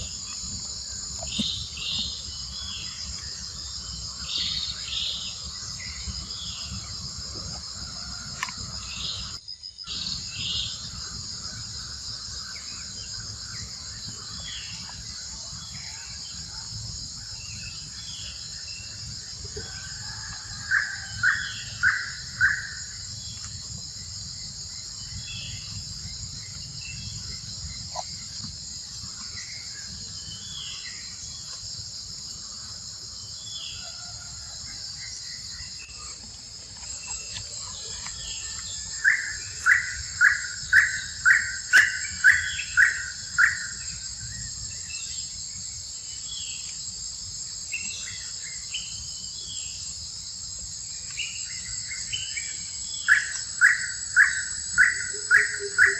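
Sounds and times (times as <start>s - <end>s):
insects droning: 0.0s - 55.9s
loud evenly spaced calls: 20.7s - 22.9s, 39.0s - 43.8s, 53.0s - 55.9s
bird chirps: 36.9s - 44.0s.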